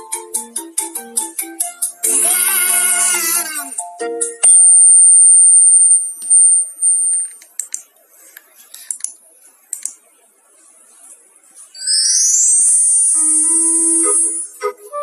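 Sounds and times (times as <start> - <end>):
high-pitched alarm beep: 4.4 - 7.3, 11.8 - 14.5.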